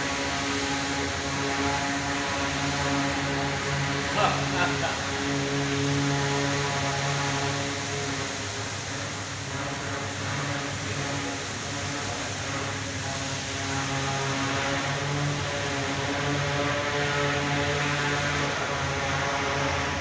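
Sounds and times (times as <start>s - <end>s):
generator engine humming: 0.0s - 7.2s.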